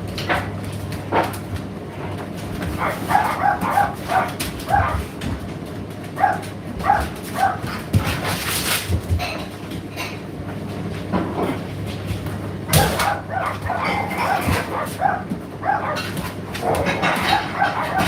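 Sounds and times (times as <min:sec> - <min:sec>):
tumble dryer humming: 0:00.0 - 0:18.0.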